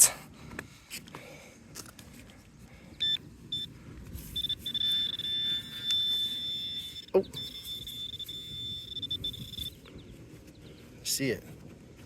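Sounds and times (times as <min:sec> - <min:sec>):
metal detector beeps: 0:03.0 - 0:09.8
metal detector steady tone: 0:03.0 - 0:09.9.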